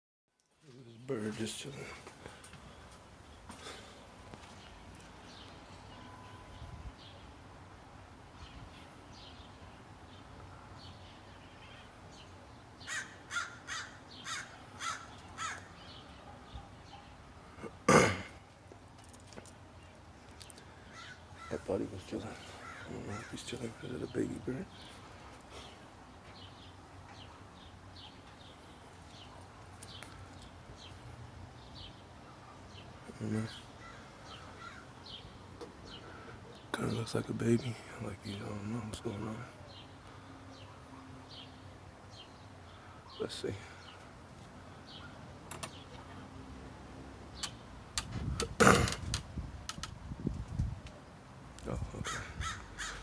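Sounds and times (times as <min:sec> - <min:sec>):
bird calls: 0:08.4 - 0:18.5, 0:19.4 - 0:46.3, 0:51.6 - 0:53.0.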